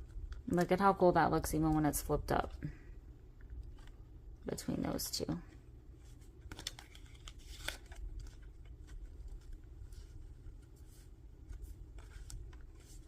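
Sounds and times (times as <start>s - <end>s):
low steady hum: 0.0s - 13.0s
paper brushing: 7.6s - 13.0s.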